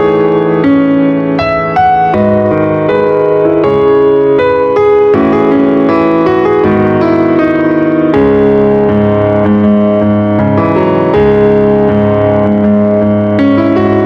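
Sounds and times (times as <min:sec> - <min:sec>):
piano melody: 0:00.0 - 0:14.0.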